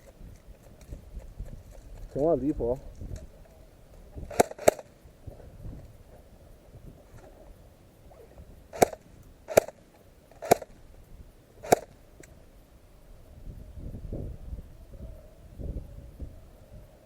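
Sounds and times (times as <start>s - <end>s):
airsoft gun shots: 4.3s - 4.9s, 8.7s - 9.8s, 10.4s - 10.8s, 11.6s - 12.0s.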